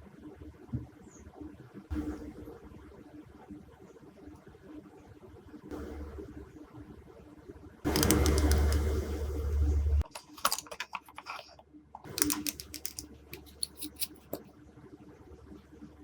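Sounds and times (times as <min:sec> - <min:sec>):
low hum: 0:07.9 - 0:14.4.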